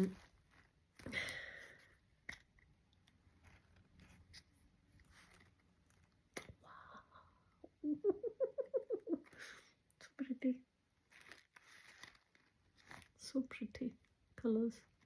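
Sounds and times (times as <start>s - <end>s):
packaging rustling: 0.0s - 6.3s, 11.0s - 13.3s.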